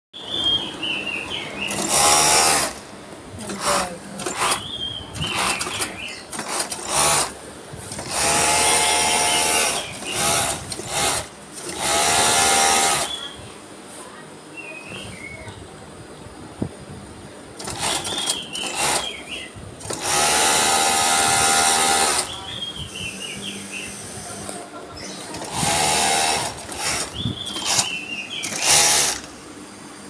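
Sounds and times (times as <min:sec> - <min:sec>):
overlock machine running in bursts: 0:01.7 - 0:13.2, 0:17.6 - 0:19.2, 0:19.8 - 0:24.6, 0:25.2 - 0:29.3.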